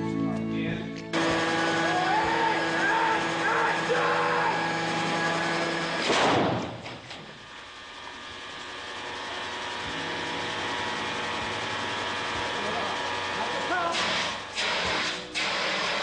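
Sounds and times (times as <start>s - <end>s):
engine hum: 0.0s - 16.0s
people yelling: 1.5s - 4.9s
pyrotechnic explosion: 6.0s - 6.8s.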